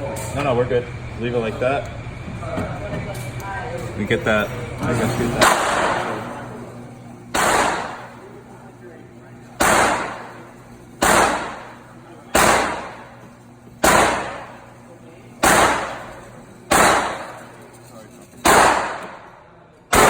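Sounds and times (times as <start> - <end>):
gunshots with ringing tail: 7.4 - 8.1, 9.6 - 10.3, 11.0 - 11.8, 12.4 - 13.1, 13.8 - 14.6, 15.4 - 17.4, 18.4 - 19.2.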